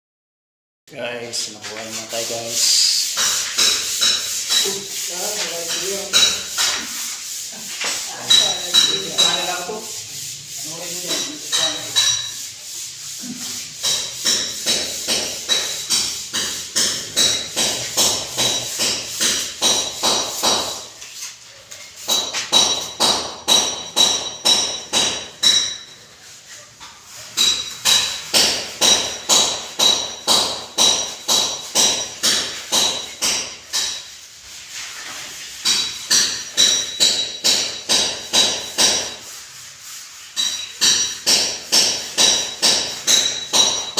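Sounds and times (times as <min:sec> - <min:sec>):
hammer striking metal: 0:13.8 - 0:20.9, 0:22.0 - 0:26.0, 0:27.4 - 0:34.1, 0:35.6 - 0:39.3, 0:40.4 - 0:43.9.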